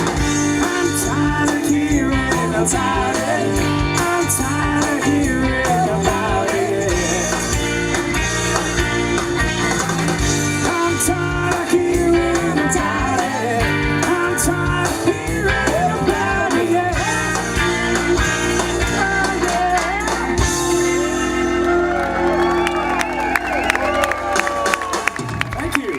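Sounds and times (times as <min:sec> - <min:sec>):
bending guitar line: 0:00.0 - 0:25.6
rock band playing: 0:00.0 - 0:25.9.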